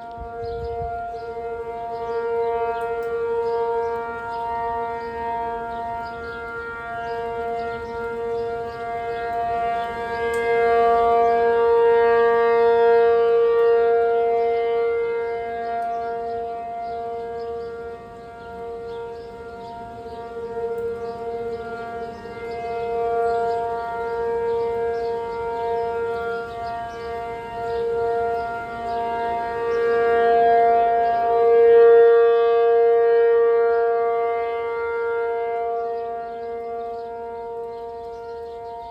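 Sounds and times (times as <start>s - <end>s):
warning siren steady tone: 0.0s - 38.9s.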